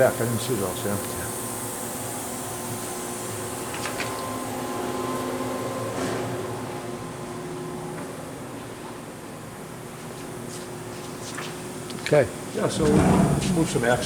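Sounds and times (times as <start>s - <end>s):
machine humming: 12.5s - 14.0s.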